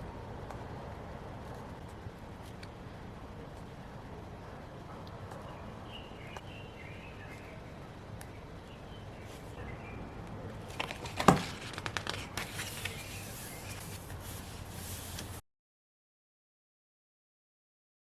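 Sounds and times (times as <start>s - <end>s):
paper handling: 10.6s - 15.4s.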